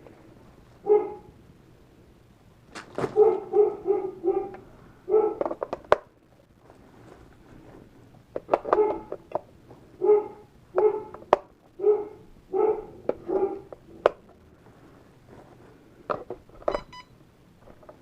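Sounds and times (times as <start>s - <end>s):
dog barking: 0.8s - 1.3s, 3.0s - 5.6s, 8.6s - 9.2s, 10.0s - 11.2s, 11.8s - 13.7s.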